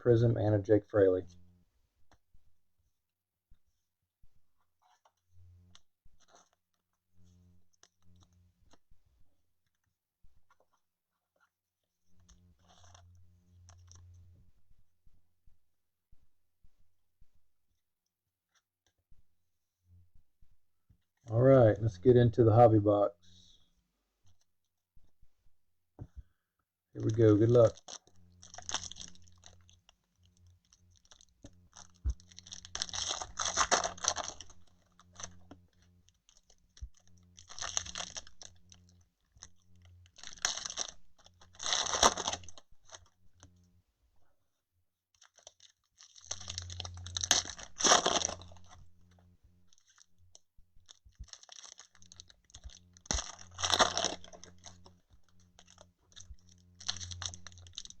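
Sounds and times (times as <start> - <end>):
plastic and foil packaging tearing: 27.5 - 29.7, 30.9 - 35.5, 36.3 - 38.5, 40.1 - 43.0, 45.2 - 48.8, 50.9 - 54.9, 55.6 - 58.0.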